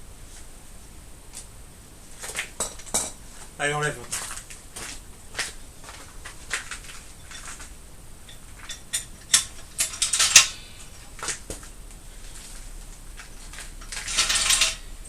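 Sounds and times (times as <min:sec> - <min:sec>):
car jack clicking and clanking: 0:08.3 - 0:11.5, 0:13.5 - 0:15.0.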